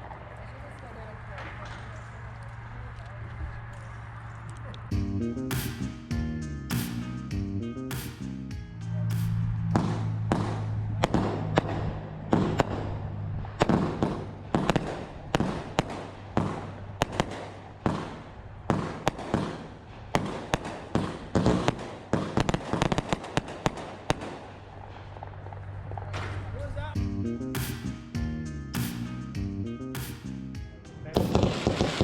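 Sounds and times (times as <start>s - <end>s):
fireworks bangs and crackling: 5.5s - 5.9s, 9.1s - 26.7s, 27.6s - 28.0s, 31.2s - 32.0s.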